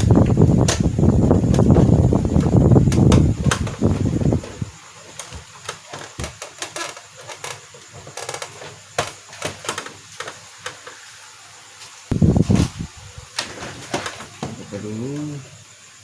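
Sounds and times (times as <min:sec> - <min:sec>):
fan-like whir: 0:00.0 - 0:06.3, 0:09.7 - 0:16.0
plastic parts clicking and knocking: 0:00.0 - 0:11.0.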